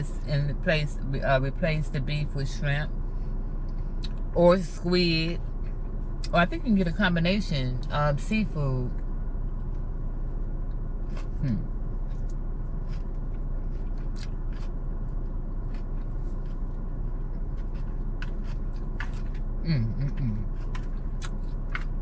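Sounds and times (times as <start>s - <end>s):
low hum inside car: 0.0s - 22.0s
salad being chewed: 10.6s - 22.0s
person murmuring: 11.4s - 11.7s, 19.6s - 20.5s.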